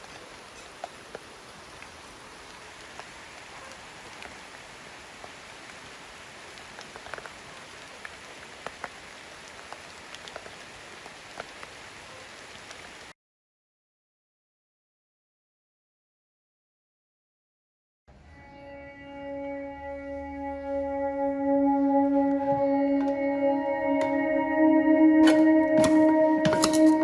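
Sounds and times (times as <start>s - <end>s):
raindrops ticking: 0.0s - 13.1s
steady rain falling: 0.0s - 13.2s, 25.2s - 27.0s.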